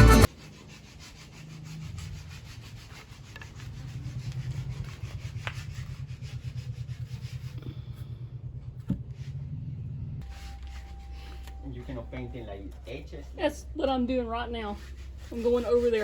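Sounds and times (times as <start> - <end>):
sandpaper on wooden board: 0.0 - 7.6, 10.2 - 12.0, 14.3 - 16.0.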